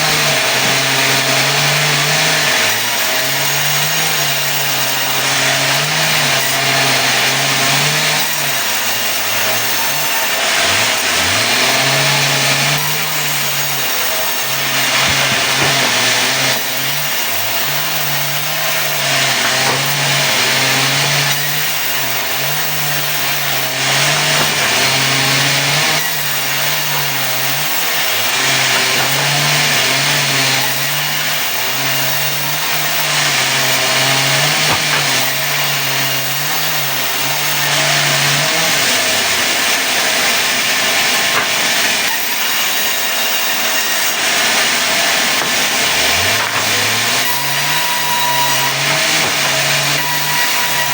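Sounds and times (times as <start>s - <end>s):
saw hissing through wood: 0.0s - 50.9s
sawmill engine drone: 0.0s - 50.9s.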